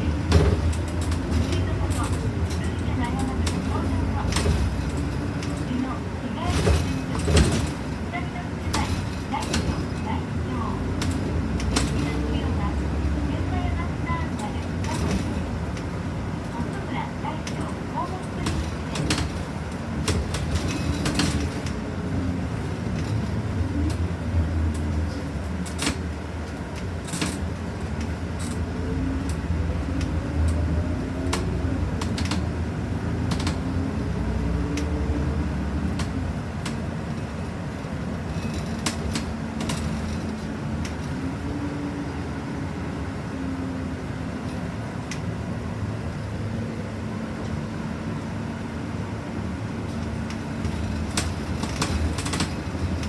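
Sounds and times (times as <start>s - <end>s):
bus engine running: 0.0s - 53.0s
sharp clicks and rattles: 0.1s - 21.9s, 33.2s - 34.2s, 49.9s - 53.0s.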